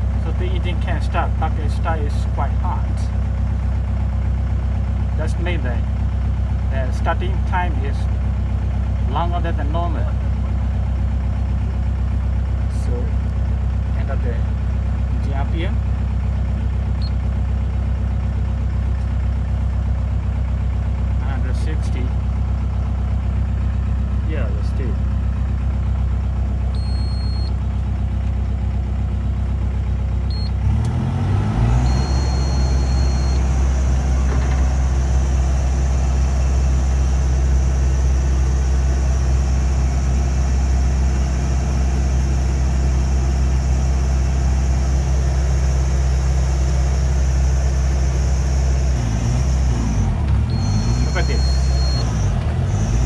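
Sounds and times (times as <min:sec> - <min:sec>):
high engine whine: 0:00.0 - 0:03.9, 0:24.4 - 0:53.0
excavator diesel engine running: 0:00.0 - 0:53.0.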